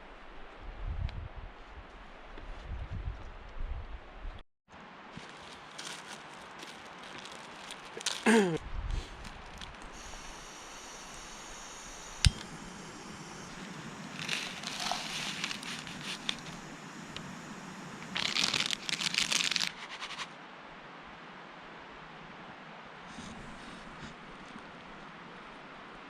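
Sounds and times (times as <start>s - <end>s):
crinkling rustling handling noise: 5.1s - 11.6s, 12.6s - 20.3s.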